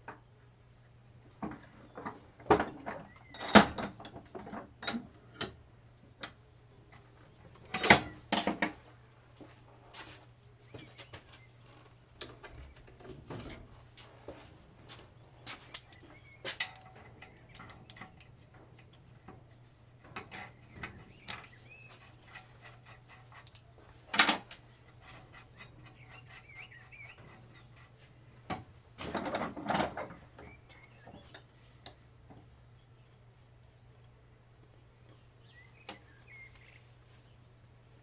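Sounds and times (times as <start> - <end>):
clicks and rattles of metal parts: 1.4 - 5.6, 6.2 - 8.8, 11.7 - 13.8, 14.9 - 33.1
birds chirping: 10.6 - 13.1, 14.9 - 23.9, 24.6 - 28.4, 29.8 - 37.6.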